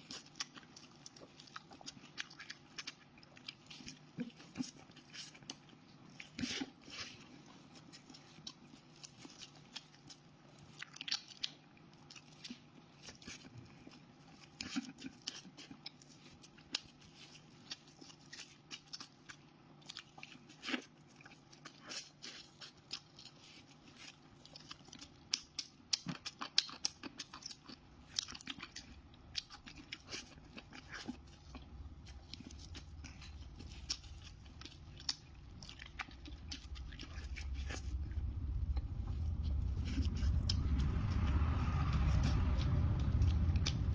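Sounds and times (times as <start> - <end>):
crunchy chewing: 0.0 - 43.9
low rumble: 31.2 - 43.9.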